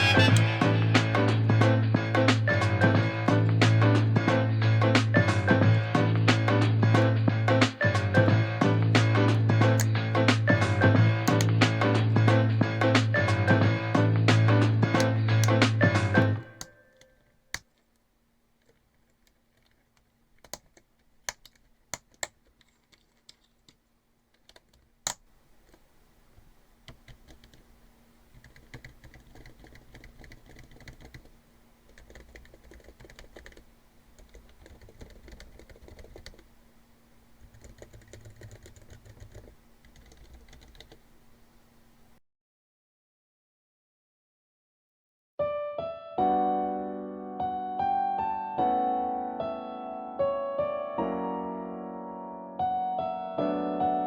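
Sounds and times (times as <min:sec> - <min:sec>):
typing on keyboard: 0:26.9 - 0:27.6, 0:28.4 - 0:31.3, 0:31.9 - 0:33.6, 0:34.2 - 0:36.4, 0:37.4 - 0:41.0.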